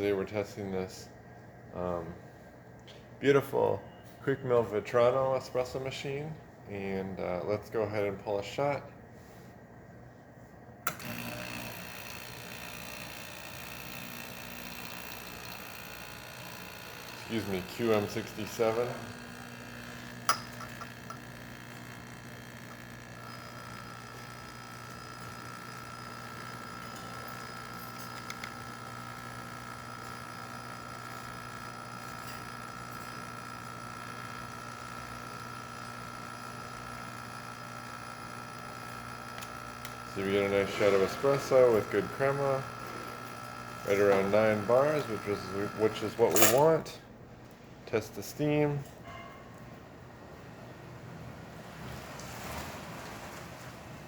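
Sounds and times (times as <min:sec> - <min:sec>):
espresso machine pump running: 0:10.8 - 0:46.9
espresso machine switch click: 0:10.9 - 0:11.3.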